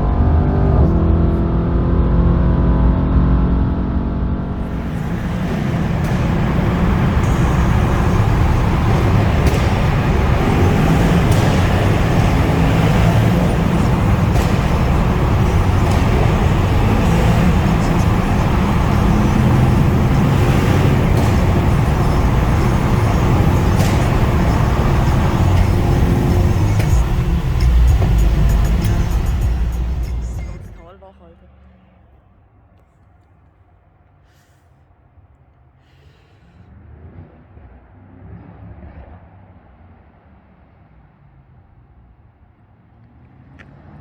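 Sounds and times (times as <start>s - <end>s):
car exhaust drone: 0.0s - 31.0s
faint sharp exhaust cracks: 4.5s - 30.9s.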